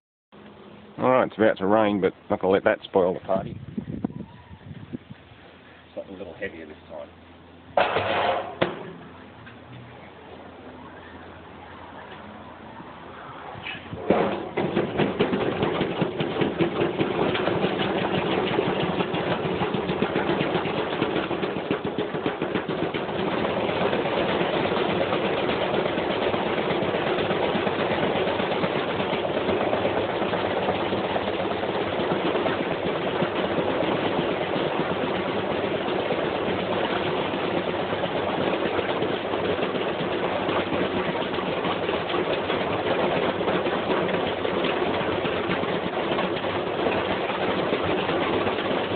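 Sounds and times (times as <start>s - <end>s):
metal clattering in washing machine drum: 14.0s - 48.9s.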